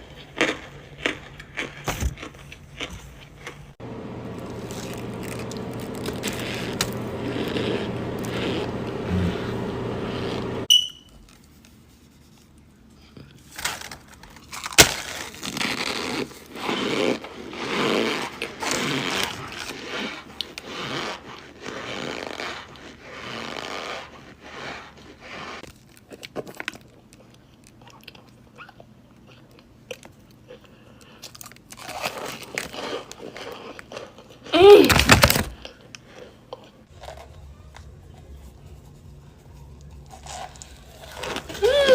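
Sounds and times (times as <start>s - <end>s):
crunchy blocks being chewed: 0.0s - 3.8s, 4.4s - 8.8s, 14.4s - 34.5s
steady hum: 3.8s - 10.7s.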